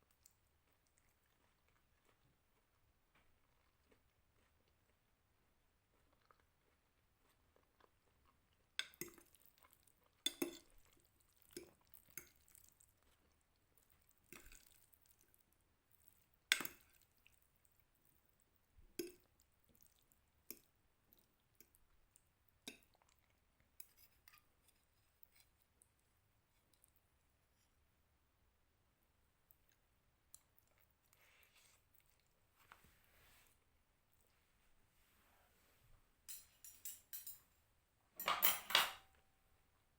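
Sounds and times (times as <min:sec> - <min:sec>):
cutlery clinking on glass dish: 0:10.3 - 0:10.7, 0:36.3 - 0:37.4, 0:38.2 - 0:39.1.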